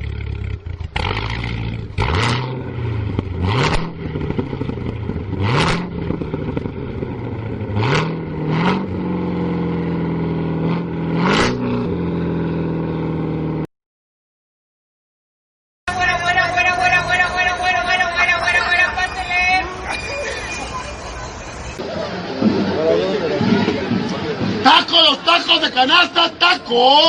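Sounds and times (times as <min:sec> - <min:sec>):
car engine accelerating: 0:00.0 - 0:13.7.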